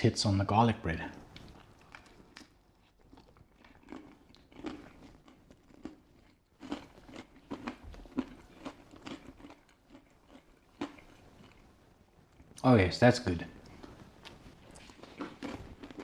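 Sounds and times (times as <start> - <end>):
man chewing crunchy bread: 1.1 - 12.6, 13.6 - 16.0.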